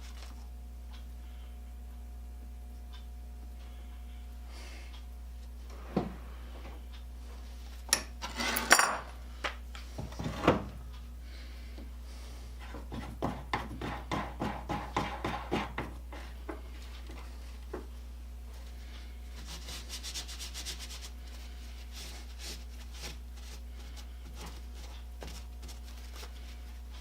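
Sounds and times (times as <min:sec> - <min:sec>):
metal parts clattering on workbench: 0:08.2 - 0:09.1.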